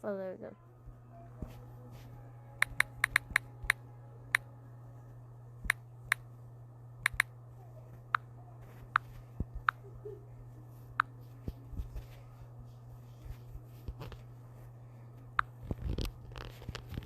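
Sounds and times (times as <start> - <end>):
steady low hum: 0.0 - 17.0
sharp clicks on a device: 2.6 - 4.4, 7.0 - 7.3.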